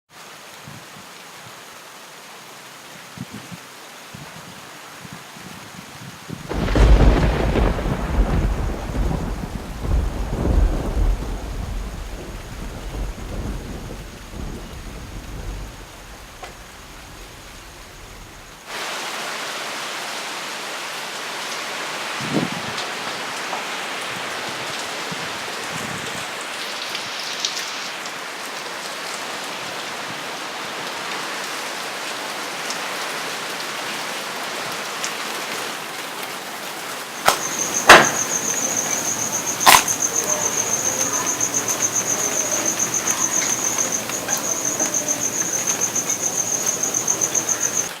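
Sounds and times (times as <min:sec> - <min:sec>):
steady rain: 0:00.1 - 0:48.0
insect trill pulsing: 0:06.5 - 0:18.6, 0:37.2 - 0:48.0
sharp knocks: 0:37.2 - 0:40.0.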